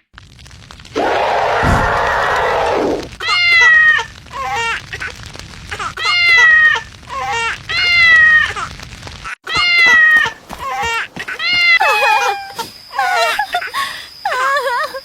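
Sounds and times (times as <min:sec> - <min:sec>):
cat meowing: 0:09.5 - 0:12.7.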